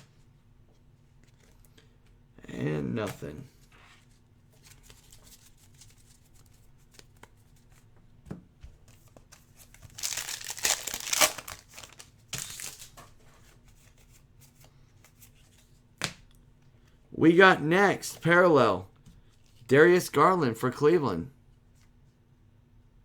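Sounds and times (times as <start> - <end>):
plastic wrapper crinkling: 9.7 - 13.0.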